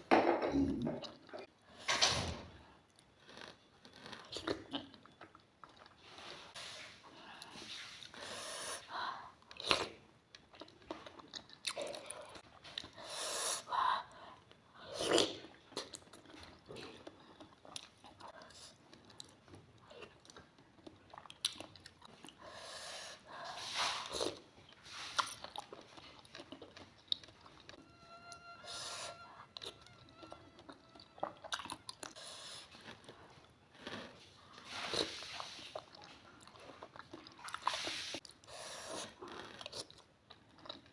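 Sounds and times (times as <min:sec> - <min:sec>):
wet chewing with smacks: 0:14.5 - 0:22.4, 0:23.7 - 0:27.8, 0:29.6 - 0:40.9.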